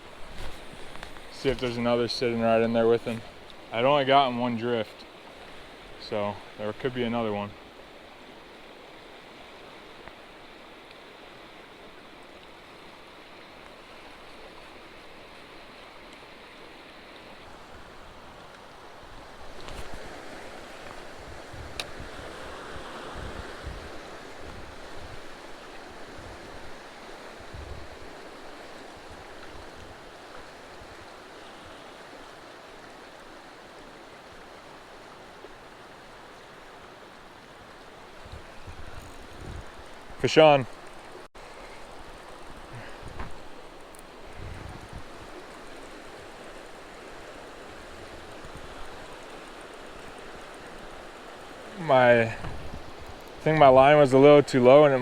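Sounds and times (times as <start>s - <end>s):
creek water running: 0.0s - 55.0s
wind buffeting microphone: 19.2s - 26.8s, 27.4s - 28.2s, 38.2s - 40.2s, 44.2s - 45.6s, 52.3s - 54.0s.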